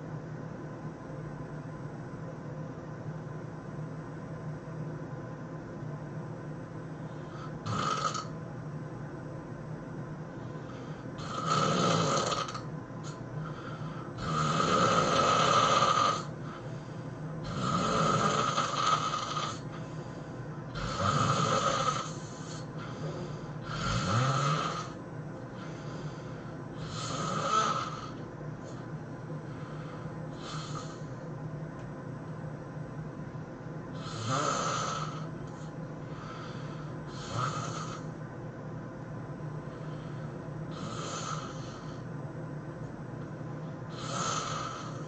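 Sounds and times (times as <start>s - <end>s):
steady low hum: 0.0s - 45.0s
person snoring heavily: 7.2s - 8.3s, 10.5s - 12.7s, 13.4s - 16.7s, 17.4s - 20.1s, 20.7s - 28.8s, 29.5s - 31.2s, 34.0s - 38.1s, 39.7s - 42.1s, 43.9s - 45.0s.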